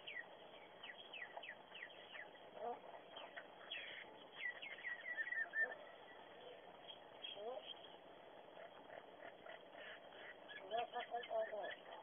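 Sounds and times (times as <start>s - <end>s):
bird chirping: 0.0s - 12.0s
low bird call: 0.0s - 12.0s.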